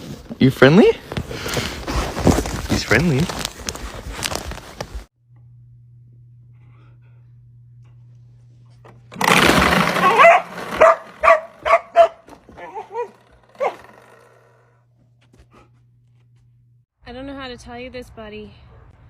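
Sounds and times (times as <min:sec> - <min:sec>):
faint low hum: 0:05.2 - 0:09.1
dog barking: 0:10.0 - 0:14.0.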